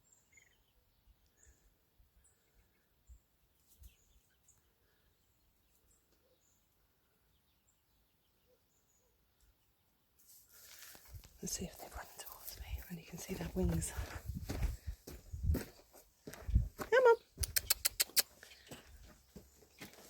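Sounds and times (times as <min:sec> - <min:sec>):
soft low thumps: 0:12.6 - 0:16.9.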